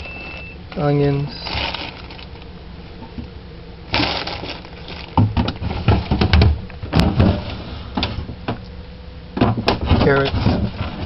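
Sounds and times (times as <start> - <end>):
plastic packaging rustling: 0.0 - 2.5, 3.9 - 6.3.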